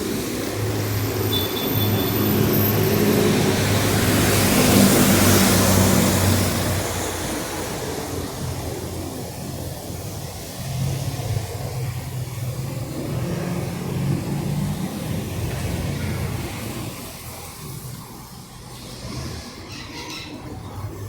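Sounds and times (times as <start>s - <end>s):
car engine passing by: 1.8s - 7.9s.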